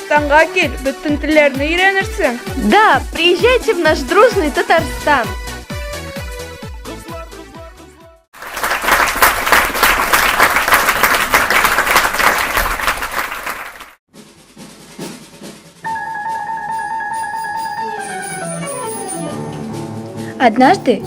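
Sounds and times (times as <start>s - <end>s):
fast drum roll: 9.7s - 15.9s.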